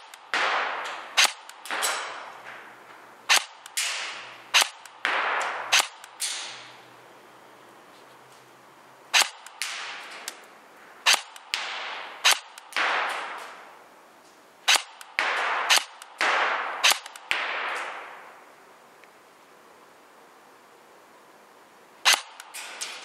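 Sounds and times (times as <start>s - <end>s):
airsoft gun shots: 0.0s - 6.8s, 9.1s - 13.8s, 14.6s - 18.4s, 22.0s - 23.0s.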